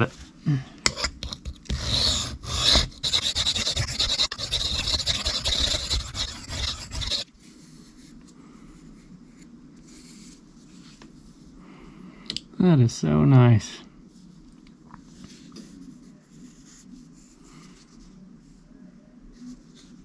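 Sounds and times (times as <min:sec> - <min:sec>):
knife scraping on sharpening stone: 0:00.8 - 0:07.2.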